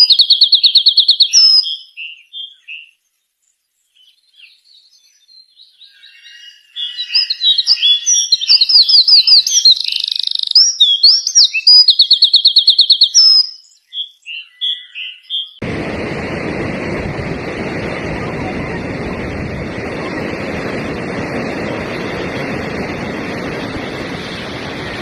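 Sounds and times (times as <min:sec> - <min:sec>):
bird singing whistled song: 0:00.0 - 0:03.1, 0:03.8 - 0:15.6
soft bird calls: 0:00.0 - 0:15.6.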